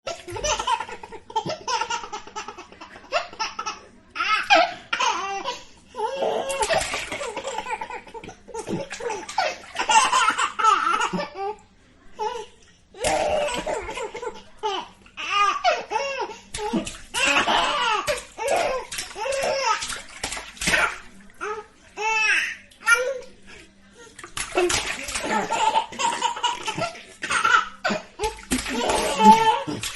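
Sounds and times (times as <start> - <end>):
baby laughing: 0.1 - 4.4, 24.6 - 29.9
water splashing in sink: 6.4 - 11.2, 13.0 - 14.5, 16.5 - 21.5, 24.2 - 29.9.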